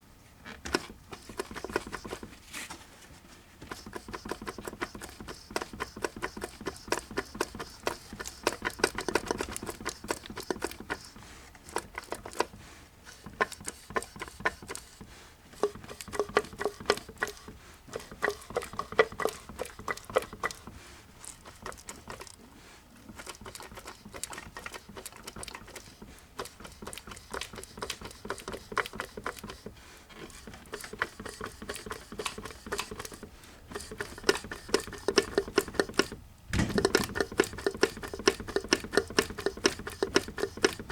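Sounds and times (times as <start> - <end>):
engine knocking when turned by hand: 3.7 - 11.0, 30.7 - 40.9.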